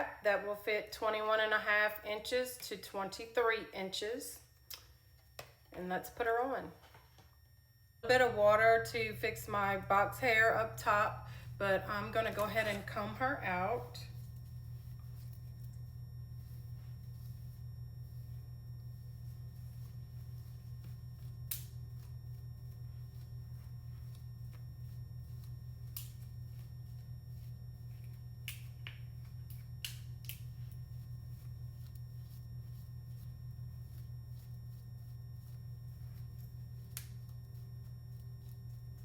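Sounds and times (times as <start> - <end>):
low electrical hum: 0.0 - 39.0
comb scratching through wig: 11.9 - 28.4, 30.4 - 39.0.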